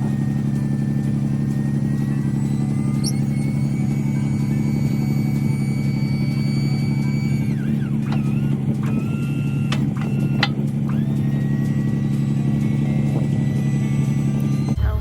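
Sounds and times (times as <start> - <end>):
truck engine running: 0.0 - 15.0
short high squeaks: 2.0 - 11.8.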